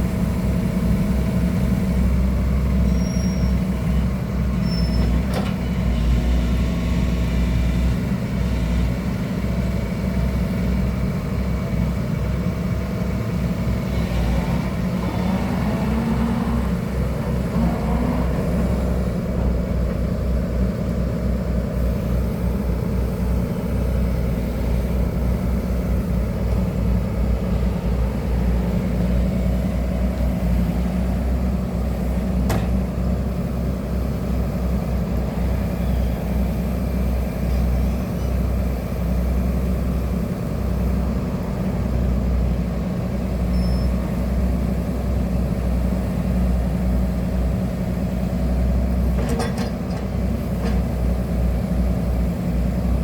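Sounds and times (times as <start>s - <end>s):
diesel engine running steadily: 0.0s - 53.0s.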